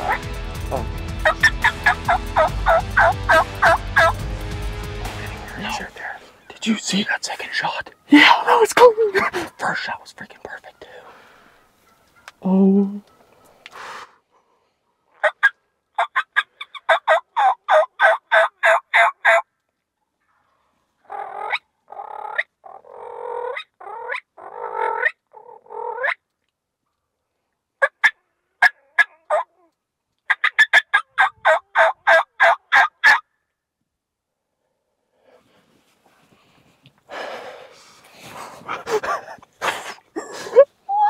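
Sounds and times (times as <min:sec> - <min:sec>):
wild turkeys calling: 0:00.0 - 0:09.9, 0:10.6 - 0:14.0, 0:15.1 - 0:19.4, 0:20.2 - 0:26.3, 0:27.8 - 0:29.5, 0:30.3 - 0:33.2, 0:40.6 - 0:41.0.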